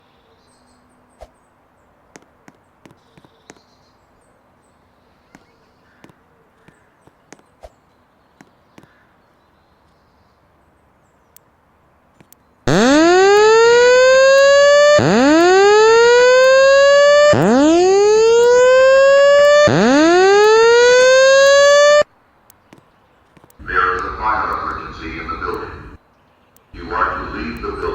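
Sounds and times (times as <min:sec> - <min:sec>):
fire alarm whooping tone: 0:12.7 - 0:22.1.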